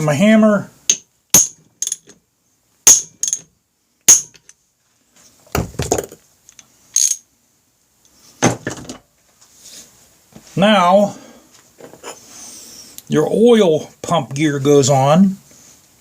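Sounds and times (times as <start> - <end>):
metal tools clattering: 1.8 - 2.2, 3.1 - 3.5
hammer striking metal: 4.1 - 4.5.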